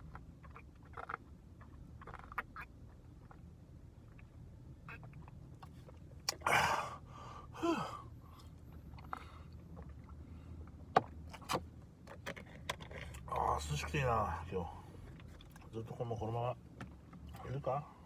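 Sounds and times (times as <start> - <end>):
chewing with sharp clicks: 0.0 - 6.4
low steady hum: 0.0 - 18.0.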